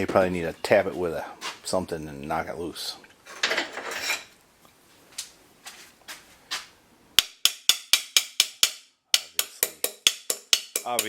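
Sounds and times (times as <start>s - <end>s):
sharp hammer taps: 7.2s - 11.0s.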